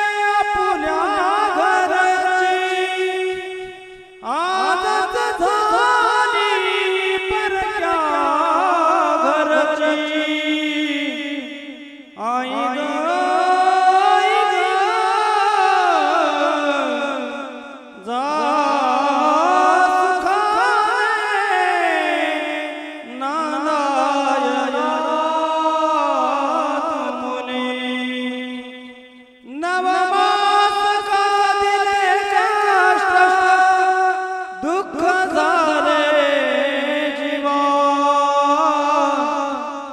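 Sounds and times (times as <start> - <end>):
man singing solo: 0.0 - 28.8.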